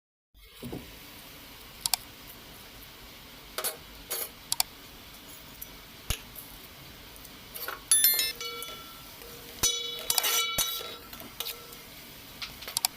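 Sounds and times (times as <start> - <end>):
spoon clinking on plate: 7.9 - 9.0
cutlery clicking on metal plate: 9.6 - 11.6.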